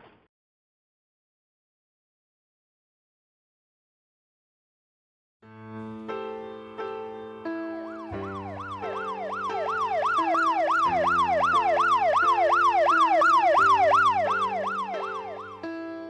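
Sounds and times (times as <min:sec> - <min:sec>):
keyboard holding chords: 0:05.5 - 0:16.0
emergency siren yelping: 0:08.0 - 0:15.6.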